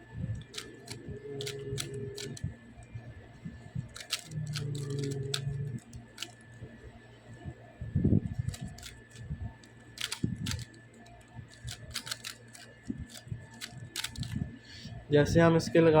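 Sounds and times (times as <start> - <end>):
puzzle cube clicking: 0.5 - 2.4, 4.0 - 6.4, 8.5 - 9.0, 10.0 - 10.7, 11.5 - 14.4.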